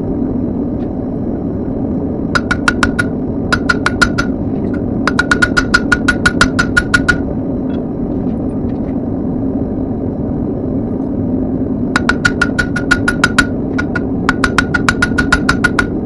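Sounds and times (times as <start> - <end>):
steady rushing noise: 0.0 - 16.0
hammer clanging on anvil: 2.4 - 4.3, 5.1 - 7.2, 12.0 - 15.9.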